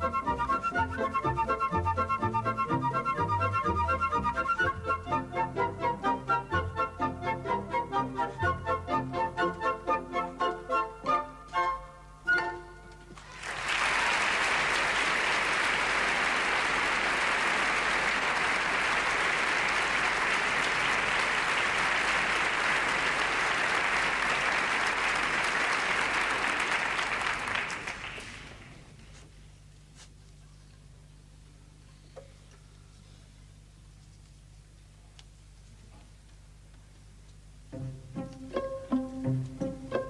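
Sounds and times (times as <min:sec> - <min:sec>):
orchestra playing: 0:00.0 - 0:13.0, 0:37.7 - 0:40.0
audience applauding: 0:13.2 - 0:28.7.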